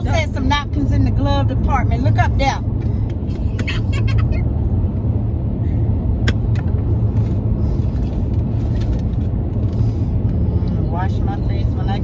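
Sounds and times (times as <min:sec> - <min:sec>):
car engine and road noise: 0:00.0 - 0:12.0.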